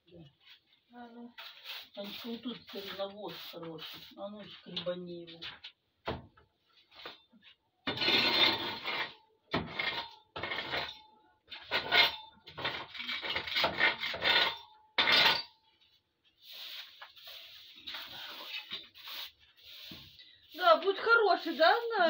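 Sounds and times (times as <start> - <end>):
scraping manure off floor: 16.3 - 22.0.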